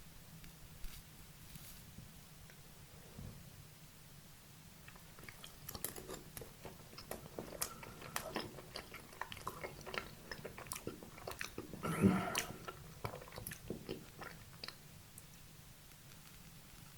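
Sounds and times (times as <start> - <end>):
wet chewing sounds: 4.8 - 16.9.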